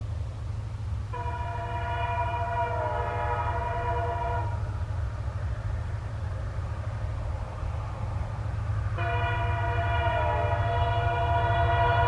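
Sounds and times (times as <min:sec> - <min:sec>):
low engine rumble: 0:00.0 - 0:12.0
locomotive air horn blast: 0:01.1 - 0:04.7, 0:09.0 - 0:12.0.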